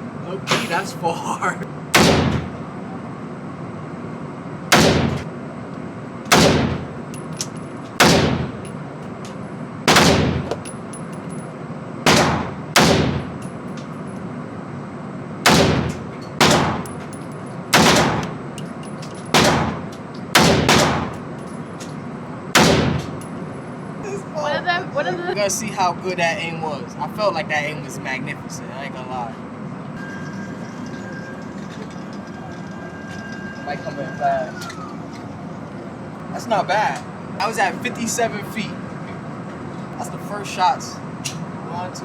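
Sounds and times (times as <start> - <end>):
gunshots with ringing tail: 1.9 - 2.6, 4.7 - 5.2, 6.3 - 6.9, 8.0 - 8.6, 9.8 - 10.5, 12.0 - 13.4, 15.4 - 16.9, 17.7 - 18.3, 19.3 - 21.2, 22.5 - 23.2.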